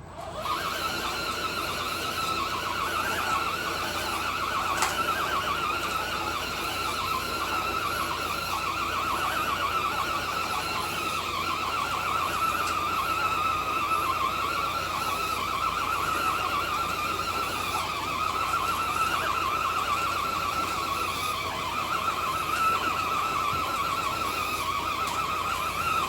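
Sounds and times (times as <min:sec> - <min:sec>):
electric motor whining: 0:00.0 - 0:26.0.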